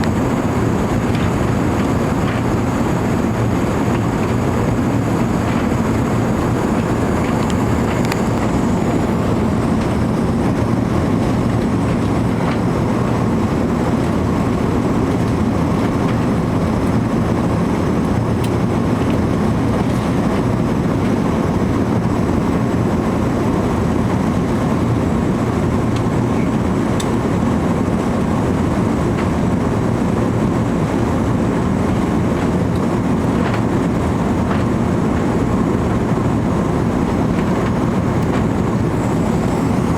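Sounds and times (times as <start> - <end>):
airliner cabin roar during take-off: 0.0 - 39.9
faint cabin rattles: 26.1 - 39.9.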